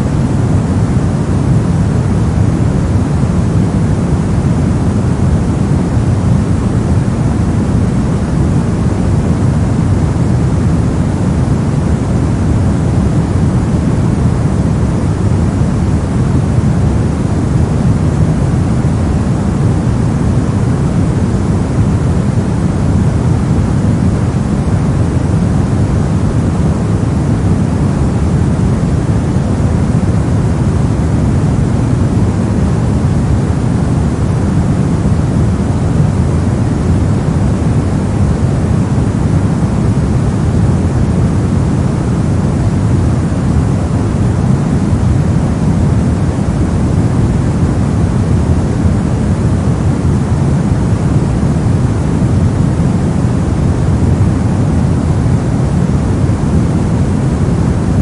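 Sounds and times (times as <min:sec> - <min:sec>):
deep rumbling brown noise: 0:00.0 - 0:58.0.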